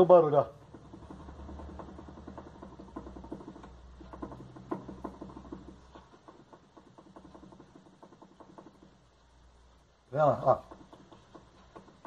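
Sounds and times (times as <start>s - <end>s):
stabilizer link knocking clicks: 0.6s - 9.2s.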